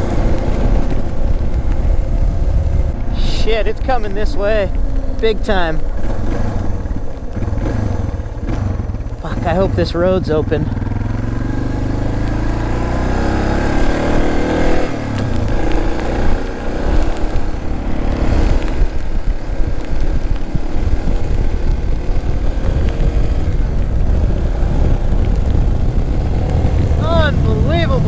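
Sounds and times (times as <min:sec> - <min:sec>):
motorcycle engine accelerating: 0:00.0 - 0:28.0
rushing noise: 0:00.0 - 0:28.0.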